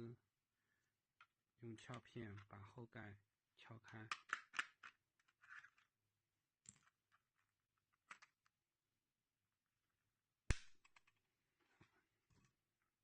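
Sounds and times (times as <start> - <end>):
loud plastic snap: 10.5 - 11.0.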